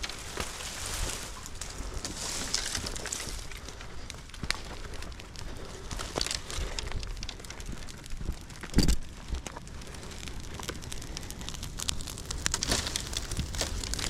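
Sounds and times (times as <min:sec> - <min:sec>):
brush and branches crackling: 0:00.0 - 0:14.0.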